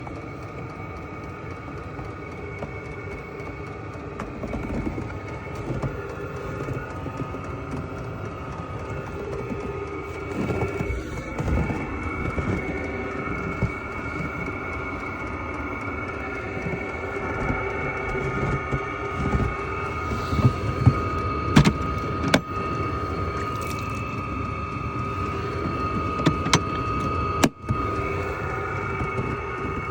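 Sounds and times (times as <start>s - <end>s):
blower fan whine: 0.0s - 29.9s
rumbling burner: 0.0s - 29.9s.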